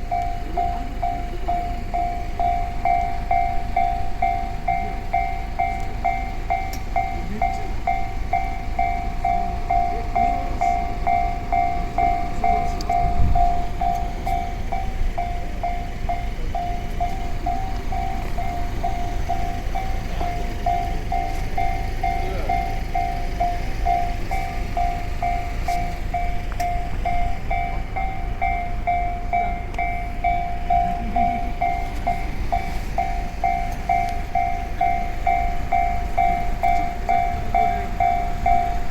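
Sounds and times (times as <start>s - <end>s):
level crossing warning bell: 0.0s - 38.9s
passing train rumble: 0.0s - 38.9s.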